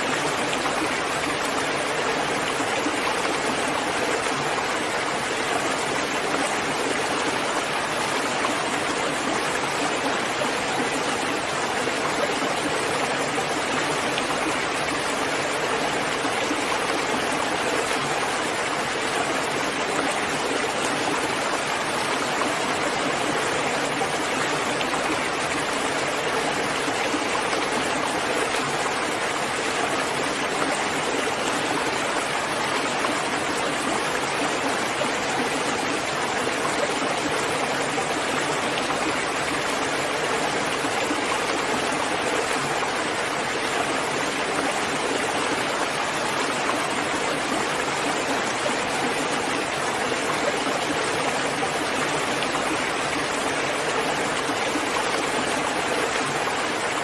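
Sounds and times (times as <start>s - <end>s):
steady rain hiss: 0.0s - 10.2s.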